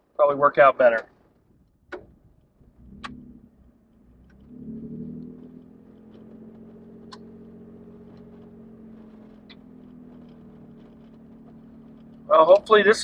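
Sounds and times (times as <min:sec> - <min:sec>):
truck engine running: 0:00.0 - 0:13.0
sharp clicks: 0:05.9 - 0:07.3.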